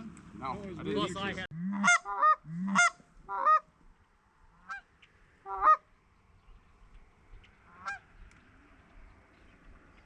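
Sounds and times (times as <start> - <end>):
goose honking: 1.6 - 3.7, 4.6 - 5.8, 7.7 - 8.0.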